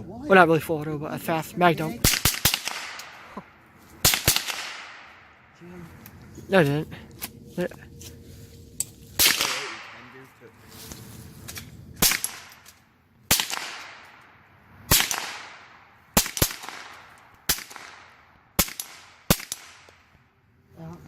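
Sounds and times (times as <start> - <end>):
gunshots with echo: 2.0 - 3.3, 4.0 - 5.3, 9.2 - 10.2, 13.3 - 14.2.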